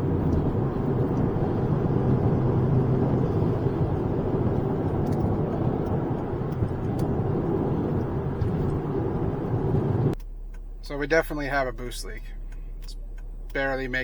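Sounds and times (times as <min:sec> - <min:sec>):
car engine driving: 0:00.0 - 0:14.0
road noise: 0:00.0 - 0:14.0.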